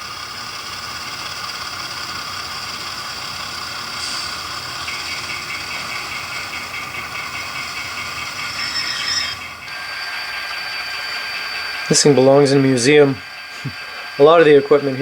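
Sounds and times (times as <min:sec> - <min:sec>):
model train motor whine: 0:00.0 - 0:15.0
higher whine tone: 0:07.2 - 0:11.2.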